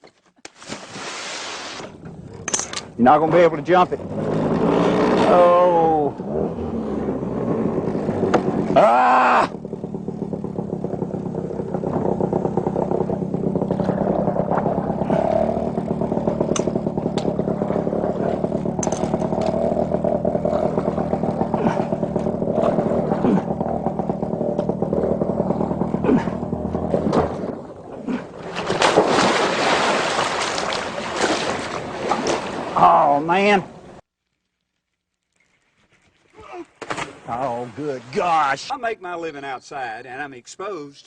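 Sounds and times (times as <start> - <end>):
motor engine running with clatter: 1.9 - 5.3, 6.1 - 29.2.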